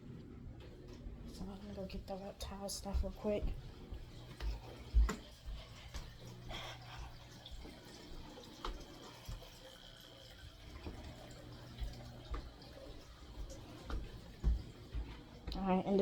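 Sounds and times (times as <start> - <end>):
low steady hum: 0.0 - 16.0
water dripping and trickling: 3.7 - 16.0.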